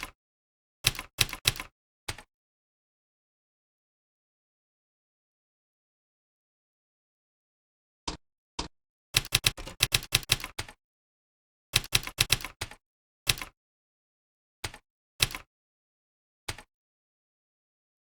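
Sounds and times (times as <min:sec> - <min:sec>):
computer keyboard typing: 0:00.9 - 0:02.3, 0:09.2 - 0:10.8, 0:11.8 - 0:13.5, 0:14.6 - 0:15.5.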